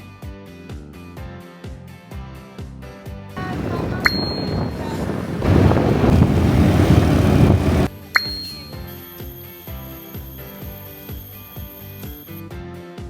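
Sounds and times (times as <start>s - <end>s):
loud rushing noise: 3.4s - 7.9s
short ding: 3.9s - 5.0s, 8.2s - 8.9s.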